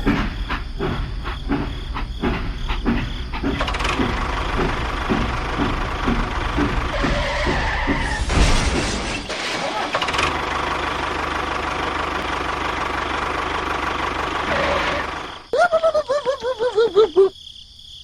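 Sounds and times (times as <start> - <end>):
small engine chugging: 0.0 - 8.3, 8.9 - 17.2.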